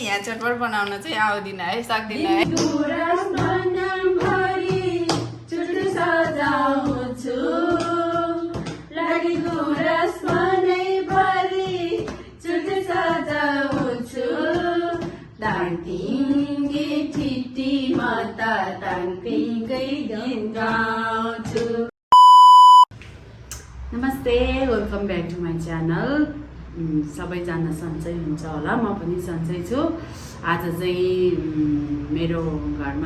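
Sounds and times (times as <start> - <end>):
women singing a folk song: 0.0 - 21.9.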